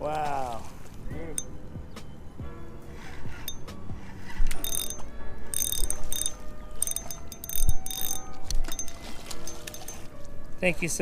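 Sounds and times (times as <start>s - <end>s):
fishing reel clicking: 3.4s - 10.1s.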